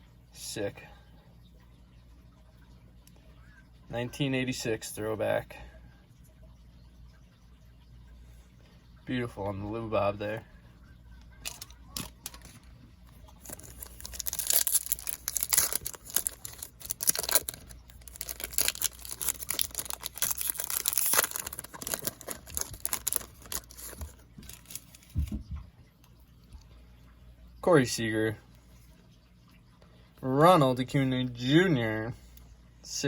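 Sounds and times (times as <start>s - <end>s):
foil wrapper tearing and crinkling: 11.4s - 12.6s, 13.4s - 25.3s
cards being shuffled: 11.5s - 12.7s, 13.4s - 25.4s.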